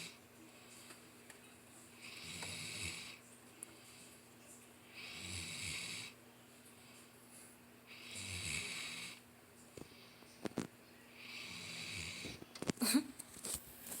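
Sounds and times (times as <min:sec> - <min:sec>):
dog snoring: 0:00.0 - 0:00.2, 0:02.0 - 0:03.2, 0:04.9 - 0:06.2, 0:07.9 - 0:09.2, 0:11.2 - 0:12.4.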